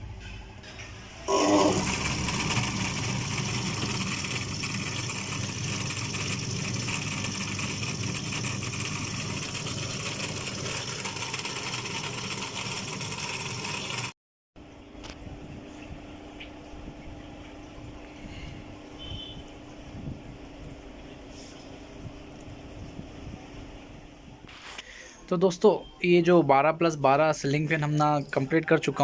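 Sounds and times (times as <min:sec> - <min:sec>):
small electric motor running: 0:01.3 - 0:14.2.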